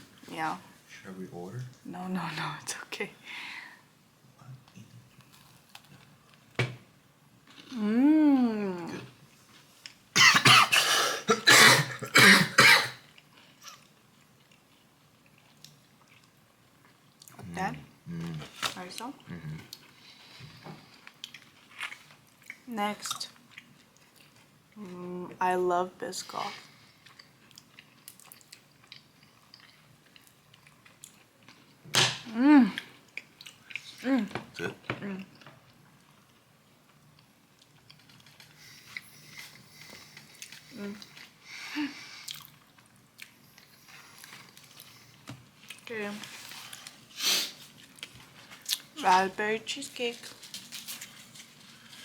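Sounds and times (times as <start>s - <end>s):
person coughing hard: 10.2s - 13.0s
chewing with mouth clicks: 13.1s - 17.4s, 20.8s - 24.6s, 26.7s - 31.7s, 32.8s - 34.0s, 42.2s - 47.0s, 47.6s - 49.0s.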